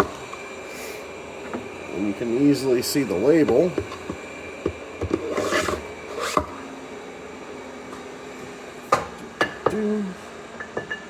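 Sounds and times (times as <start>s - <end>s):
plastic case scraping slide: 5.1s - 6.6s.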